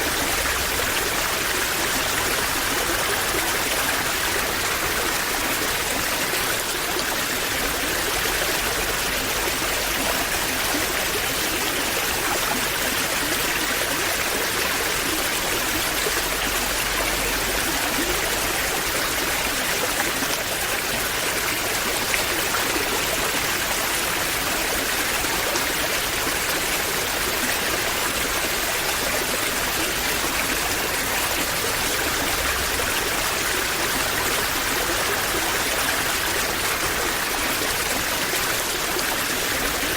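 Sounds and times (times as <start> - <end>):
waterfall rushing and splashing: 0.0 - 39.9.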